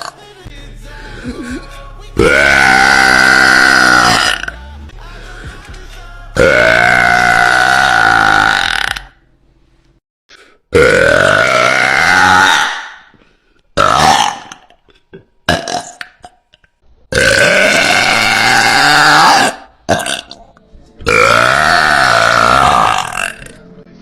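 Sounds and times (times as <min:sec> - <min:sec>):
woman burping loudly: 0:02.2 - 0:04.6, 0:06.4 - 0:09.2, 0:10.7 - 0:13.1, 0:13.8 - 0:16.4, 0:17.1 - 0:23.6.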